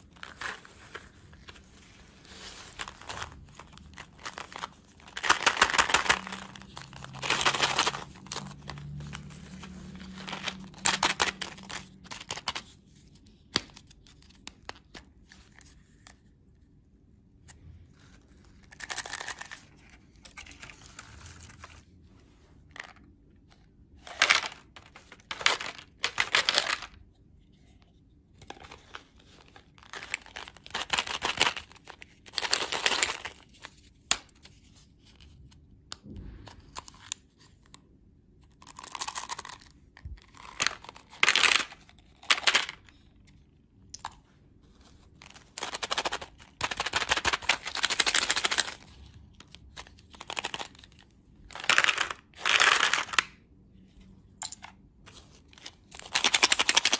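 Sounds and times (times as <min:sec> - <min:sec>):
candy wrapper tearing and crinkling: 0:00.0 - 0:12.7, 0:24.0 - 0:27.0, 0:29.4 - 0:33.7, 0:38.4 - 0:43.0, 0:45.3 - 0:53.4, 0:55.9 - 0:56.9.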